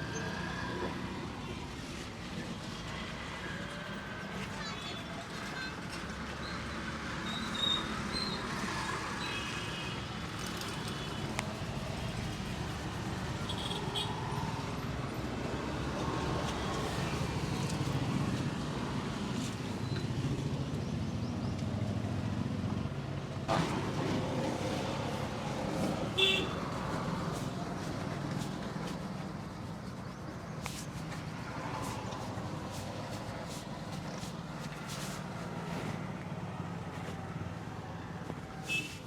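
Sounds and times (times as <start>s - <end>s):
roadside traffic noise: 0.0s - 39.0s.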